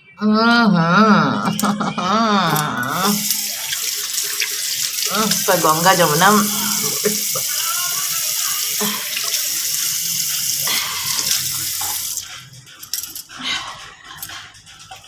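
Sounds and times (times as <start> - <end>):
tap water running into sink: 2.8 - 12.3.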